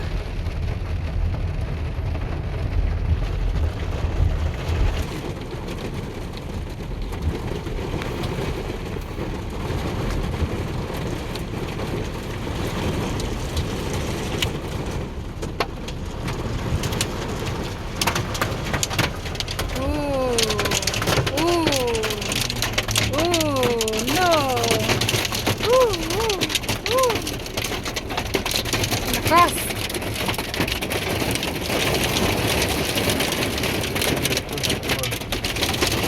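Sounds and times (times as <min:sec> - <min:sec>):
rain on car roof: 0:00.0 - 0:36.0
road rumble: 0:00.0 - 0:36.0
hailstone ticks: 0:15.4 - 0:36.0.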